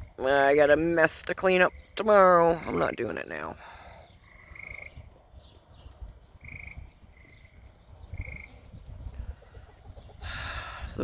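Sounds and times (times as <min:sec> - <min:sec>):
frogs trilling: 0:00.0 - 0:05.2, 0:06.3 - 0:08.6.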